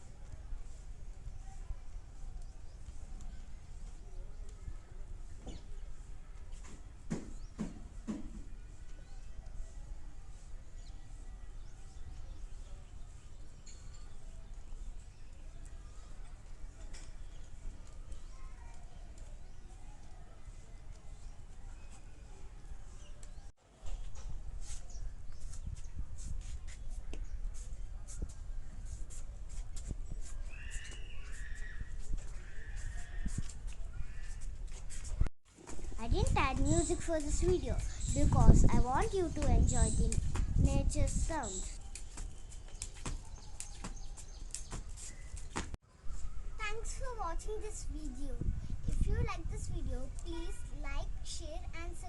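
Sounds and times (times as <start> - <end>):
birds chirping: 35.7 - 45.8.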